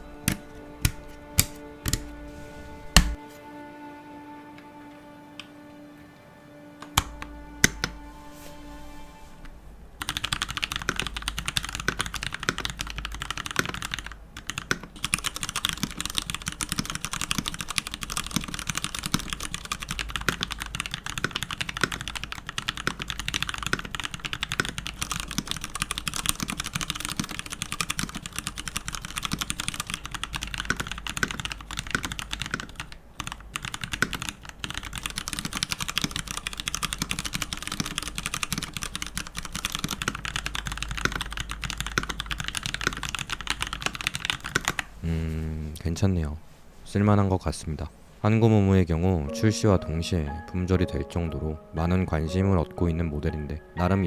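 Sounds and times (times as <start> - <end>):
fast mechanical keyboard typing: 0.0 - 2.2, 2.9 - 3.2, 10.0 - 44.9.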